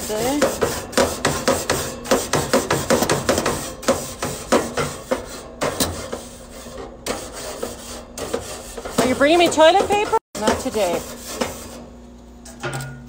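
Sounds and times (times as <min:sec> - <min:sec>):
grill grates being scrubbed: 0:00.0 - 0:12.0.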